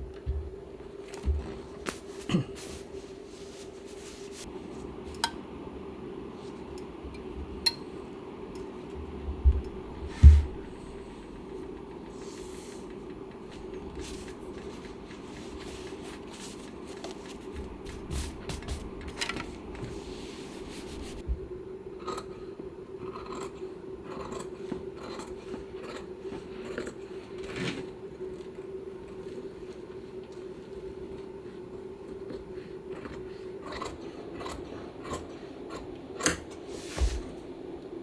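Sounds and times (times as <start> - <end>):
steady low hum: 0.0 - 38.0
dull knock: 9.5 - 10.7.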